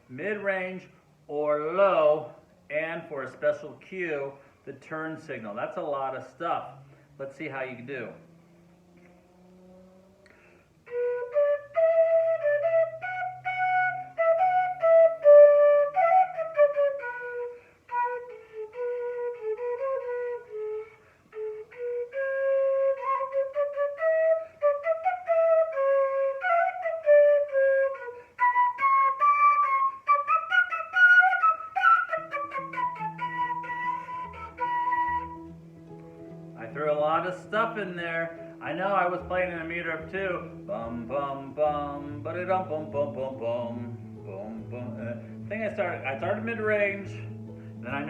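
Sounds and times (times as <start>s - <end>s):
flute melody: 10.8s - 48.0s.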